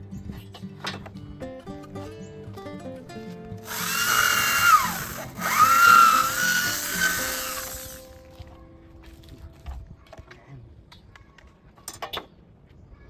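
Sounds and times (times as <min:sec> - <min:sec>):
plucked guitar music: 0:00.0 - 0:05.4
electric power drill whine: 0:03.6 - 0:08.2.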